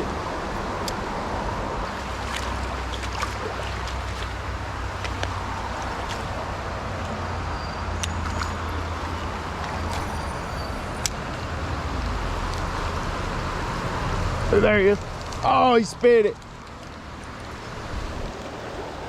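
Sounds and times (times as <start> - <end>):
creek flowing: 0.0 - 19.0
wind rumble on microphone: 16.4 - 19.0.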